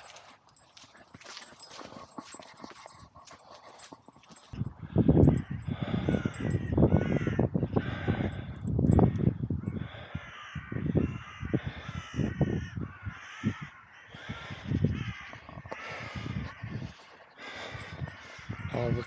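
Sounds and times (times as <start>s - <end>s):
crows cawing: 5.0s - 19.0s.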